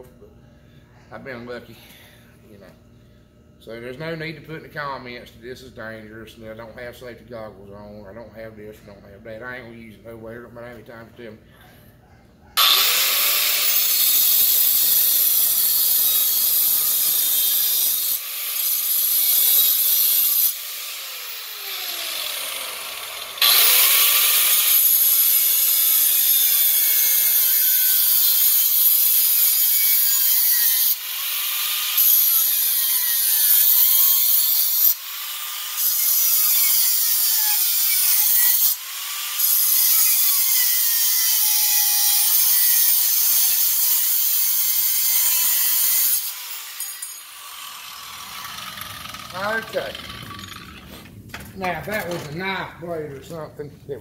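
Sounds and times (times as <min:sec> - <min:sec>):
angle grinder cutting steel: 0:12.6 - 0:50.9.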